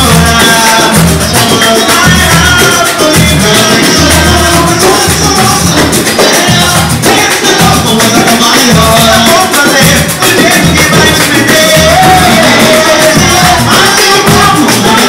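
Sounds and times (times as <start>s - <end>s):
pulsing bass line: 0.0s - 8.1s
percussion-driven music: 0.0s - 15.0s.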